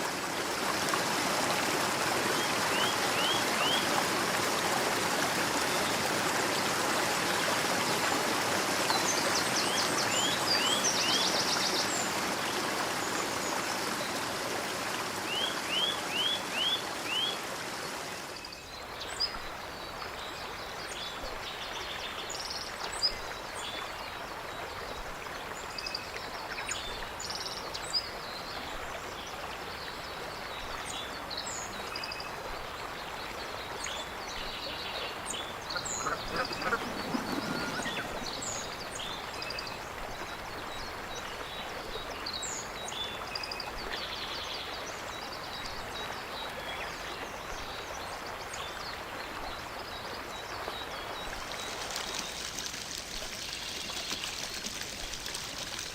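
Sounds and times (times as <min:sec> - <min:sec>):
stream water rushing: 0:00.0 - 0:55.9.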